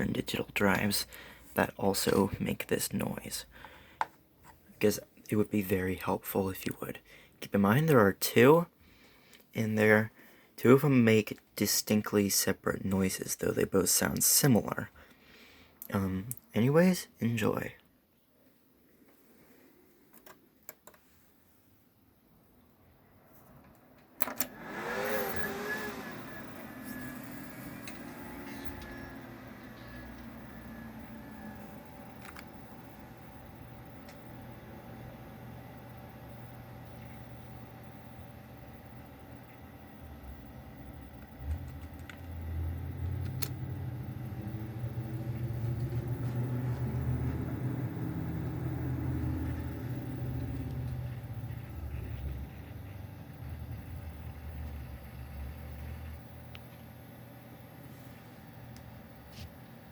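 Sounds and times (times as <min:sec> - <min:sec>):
hard drive grinding: 0:24.4 - 0:59.9
wavering whine: 0:24.6 - 0:34.4, 0:42.2 - 0:59.4.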